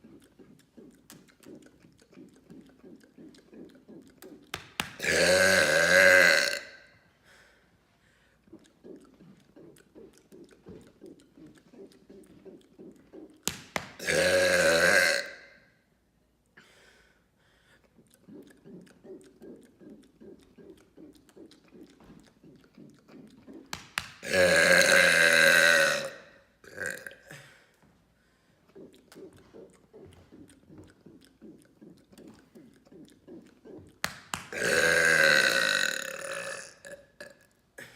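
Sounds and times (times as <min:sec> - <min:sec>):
man burping loudly: 0:05.0 - 0:06.9, 0:14.0 - 0:15.6, 0:24.2 - 0:27.4, 0:34.5 - 0:37.9.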